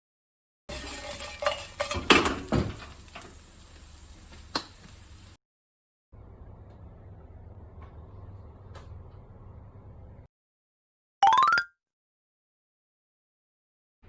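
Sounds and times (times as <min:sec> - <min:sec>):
frying sizzle: 0:00.7 - 0:05.4.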